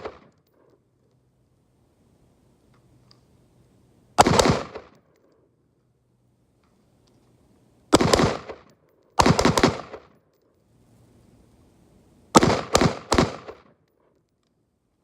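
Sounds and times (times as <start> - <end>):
rifle gunshots: 4.2 - 4.9, 7.9 - 10.1, 12.3 - 13.7.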